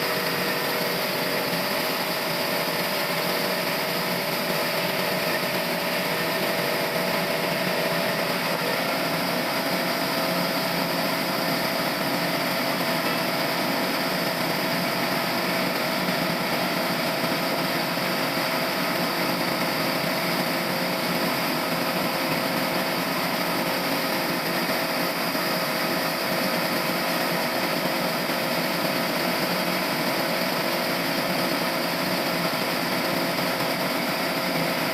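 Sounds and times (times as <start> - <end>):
sawmill machinery whining: 0.0 - 34.9.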